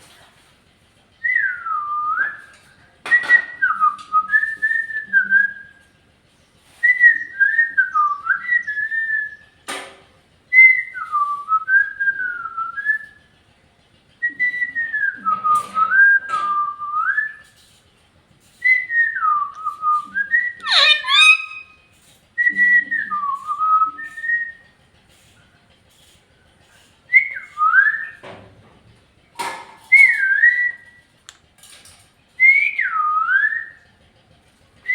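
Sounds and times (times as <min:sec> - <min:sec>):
parrot whistling a tune: 0:18.6 - 0:21.8, 0:29.9 - 0:30.9.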